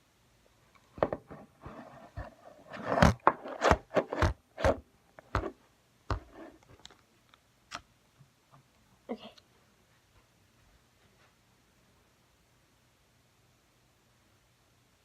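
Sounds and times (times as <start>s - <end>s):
clicks taps and scraping: 0.7s - 8.8s.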